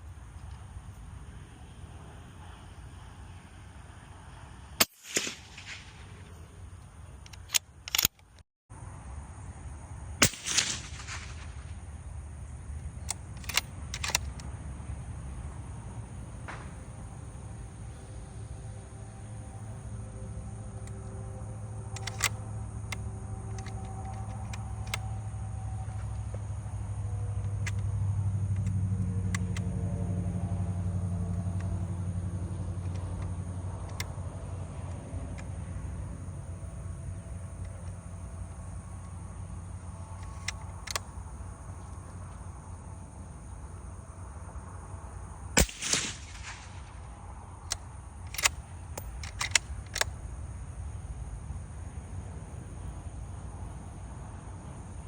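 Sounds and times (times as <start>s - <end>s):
loud crack: 4.8s - 6.4s, 10.2s - 11.8s, 45.6s - 47.2s
sharp clicks: 4.8s - 6.4s, 7.2s - 8.4s, 10.2s - 11.8s, 13.0s - 14.6s, 21.8s - 26.4s, 27.4s - 27.9s, 32.8s - 35.8s, 40.1s - 42.4s, 45.6s - 50.4s
low engine drone: 8.7s - 53.9s.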